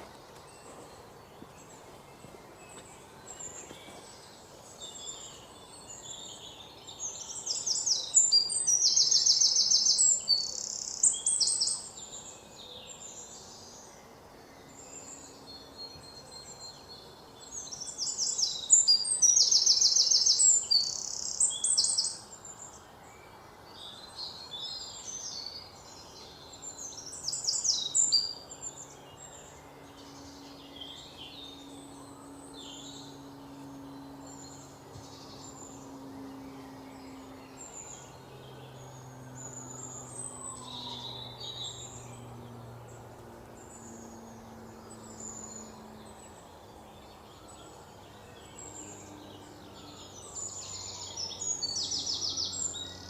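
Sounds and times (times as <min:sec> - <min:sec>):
bird chirps: 0:00.0 - 0:53.0
songbird trilling: 0:02.7 - 0:12.2, 0:17.6 - 0:22.3.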